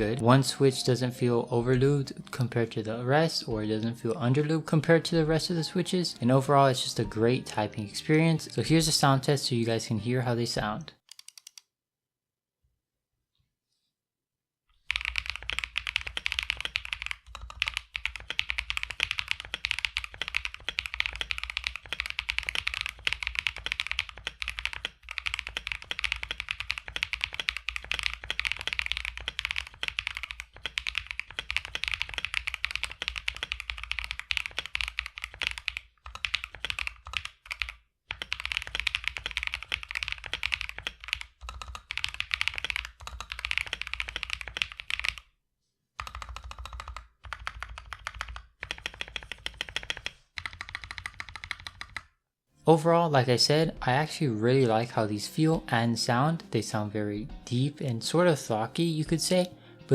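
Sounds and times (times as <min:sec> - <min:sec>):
fast typing on mechanical keyboard: 0:11.1 - 0:11.6, 0:14.9 - 0:45.2, 0:46.0 - 0:52.1.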